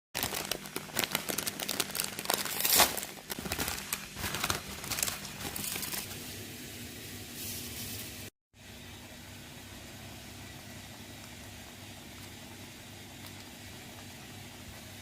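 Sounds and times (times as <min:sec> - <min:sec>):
plastic packaging tearing: 0:00.2 - 0:06.1
plastic packaging crinkling: 0:00.2 - 0:06.2.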